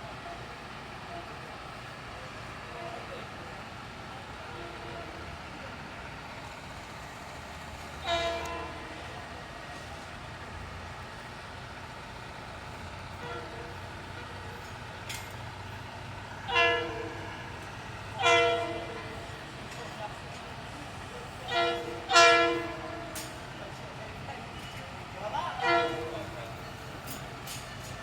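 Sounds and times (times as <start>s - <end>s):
train rumble: 0.0s - 28.0s
train horn blasts: 4.4s - 5.4s, 8.0s - 9.9s, 13.1s - 14.7s, 16.3s - 19.9s, 21.4s - 23.6s, 25.4s - 27.2s.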